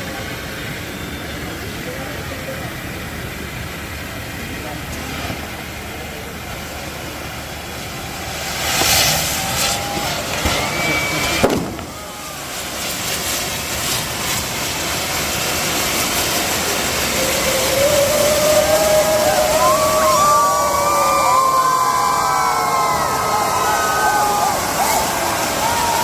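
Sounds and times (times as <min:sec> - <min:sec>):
firework whistles: 0:00.0 - 0:26.0
fireworks rushing din: 0:00.0 - 0:26.0
firework bang: 0:04.9 - 0:17.3.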